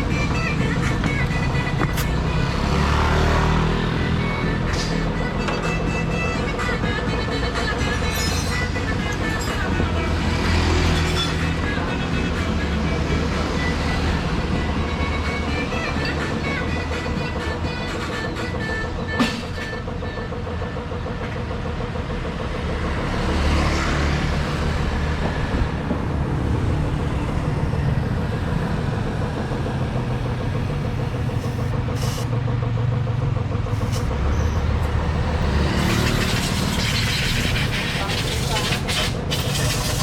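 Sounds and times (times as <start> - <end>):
motorcycle engine running: 5.3 - 40.0
wind and road noise: 22.7 - 32.6.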